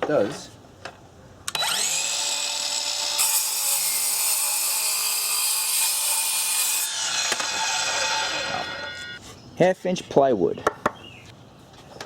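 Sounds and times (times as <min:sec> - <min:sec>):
saw blade cutting wood: 0:01.5 - 0:09.2
miter saw motor whine: 0:06.8 - 0:09.2.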